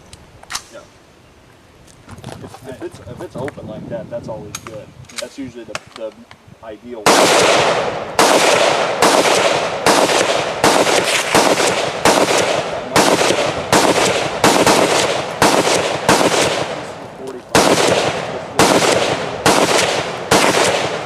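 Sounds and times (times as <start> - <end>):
gunshots with echo: 7.0 - 21.0.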